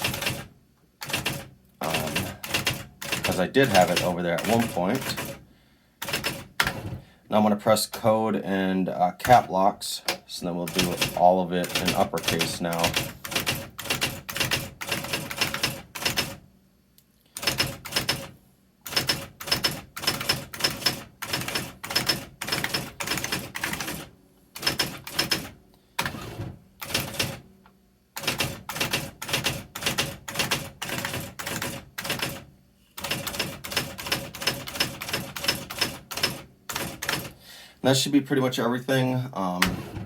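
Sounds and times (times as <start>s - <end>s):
electric typewriter print strikes: 0.0s - 5.4s, 6.0s - 7.0s, 10.7s - 16.4s, 17.4s - 18.3s, 18.9s - 27.4s, 28.2s - 32.4s, 33.0s - 37.4s.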